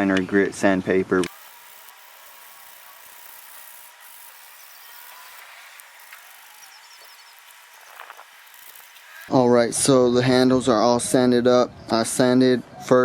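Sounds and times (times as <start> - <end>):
background hiss: 1.3 - 9.4
high chirps: 1.5 - 9.3.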